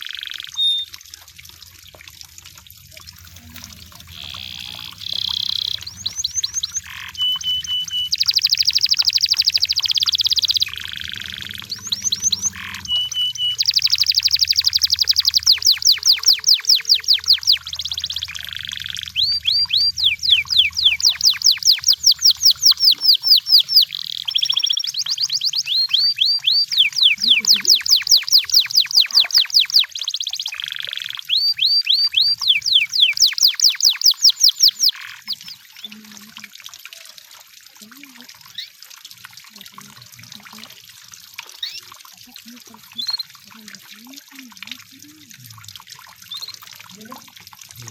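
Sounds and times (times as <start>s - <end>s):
canary singing trills: 0.0s - 0.9s, 3.2s - 36.0s, 41.6s - 45.2s, 46.3s - 47.1s.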